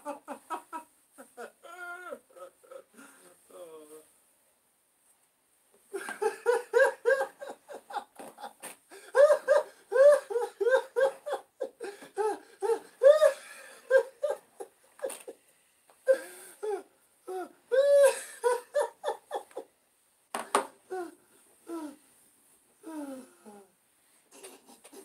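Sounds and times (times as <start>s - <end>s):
high-pitched laughter: 6.0s - 15.4s.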